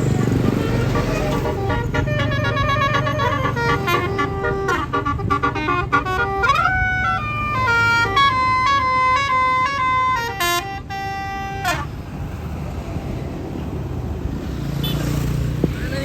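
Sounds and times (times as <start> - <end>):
bus horn playing a melody: 0.0 - 12.4.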